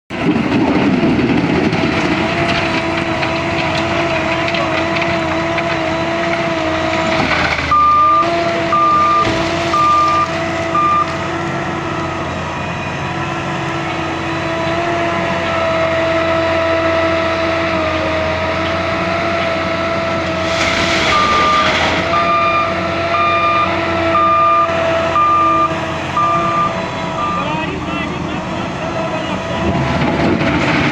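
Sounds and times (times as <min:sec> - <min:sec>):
diesel engine running: 0:00.1 - 0:30.9
reversing alarm beeping: 0:07.7 - 0:11.2, 0:20.6 - 0:28.0.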